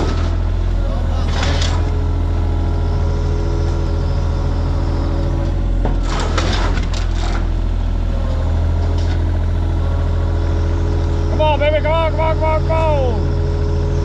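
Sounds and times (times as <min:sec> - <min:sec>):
excavator diesel engine running: 0:00.0 - 0:14.0
cracking and scraping: 0:05.8 - 0:07.5.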